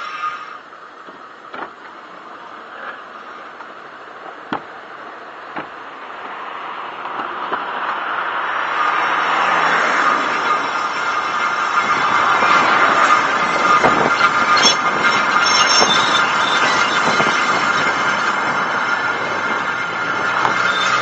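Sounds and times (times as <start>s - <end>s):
metallic scraping squeal from wheel: 0.0s - 0.8s, 8.7s - 21.0s.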